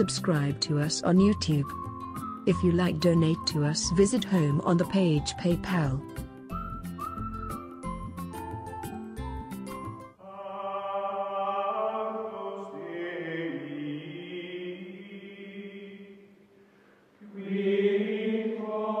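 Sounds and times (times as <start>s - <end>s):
choir-like voices holding chords: 10.2s - 16.3s, 17.2s - 19.0s.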